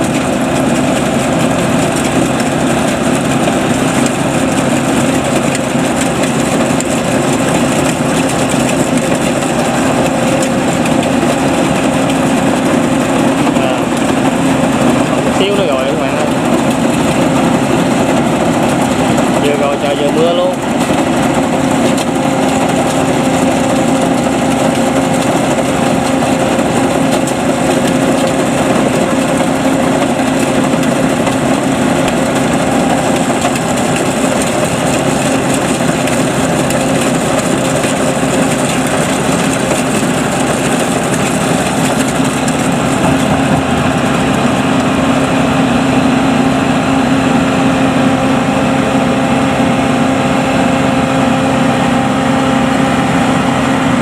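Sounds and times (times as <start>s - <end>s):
harvester engine humming: 0.0s - 54.0s.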